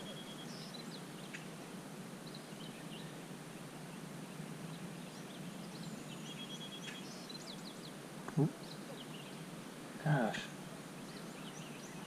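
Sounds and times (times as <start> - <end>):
bird chirps: 0.0 - 1.6, 4.7 - 9.4, 10.2 - 12.0.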